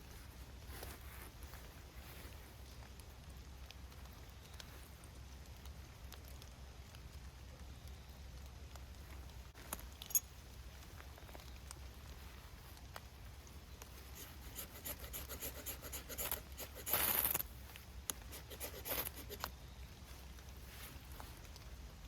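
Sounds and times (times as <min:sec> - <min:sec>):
scraping strokes: 0:14.1 - 0:17.5, 0:18.2 - 0:19.5.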